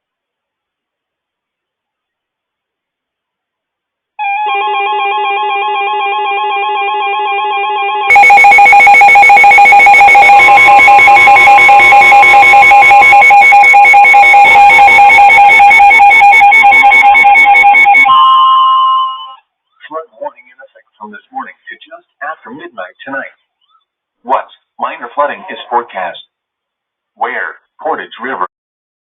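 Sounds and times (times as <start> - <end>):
wavering electronic alert tone: 7.9 - 19.4
fast-pulsing alert tone: 8.1 - 18.3.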